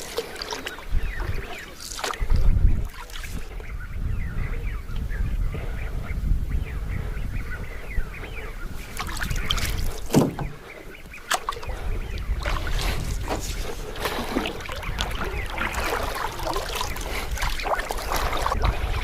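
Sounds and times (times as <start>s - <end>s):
waterfowl calling: 0.0s - 19.0s
wind and water rumble: 0.0s - 19.0s
sharp knocks: 10.1s - 10.6s.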